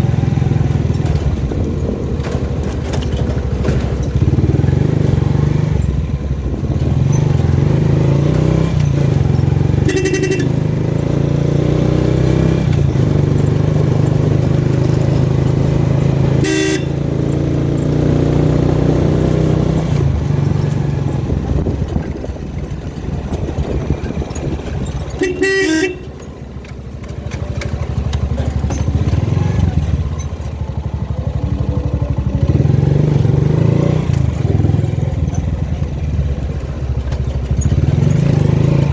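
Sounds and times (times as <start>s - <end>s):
motorcycle engine running: 0.0s - 38.9s
short horn toots: 9.8s - 10.6s, 16.4s - 17.1s, 25.2s - 26.2s.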